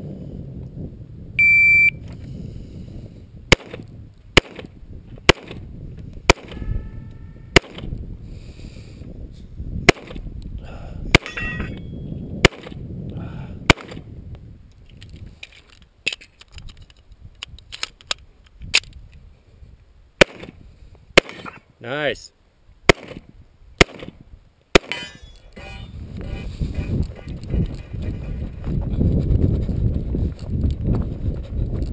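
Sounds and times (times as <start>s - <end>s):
shot timer beep: 1.4s - 2.0s
pistol shots: 21.2s - 21.6s, 22.9s - 23.2s, 23.8s - 25.1s.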